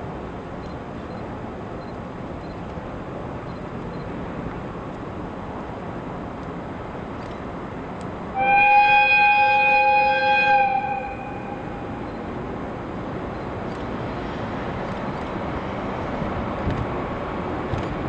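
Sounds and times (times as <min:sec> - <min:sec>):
steady background noise: 0:00.0 - 0:18.0
locomotive horn: 0:08.4 - 0:12.0.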